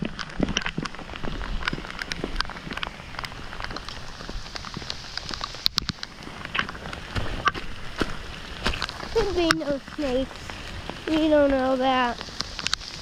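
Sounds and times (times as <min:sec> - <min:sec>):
sharp ticks of raindrops: 0:00.0 - 0:13.0
steady rain falling: 0:00.0 - 0:13.0
sharp clicks: 0:01.6 - 0:07.6, 0:12.2 - 0:13.0.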